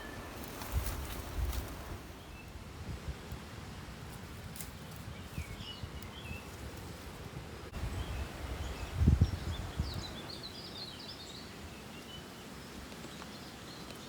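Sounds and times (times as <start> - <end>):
small birds chirping: 4.4 - 14.0
low rumbling on microphone: 5.0 - 10.3.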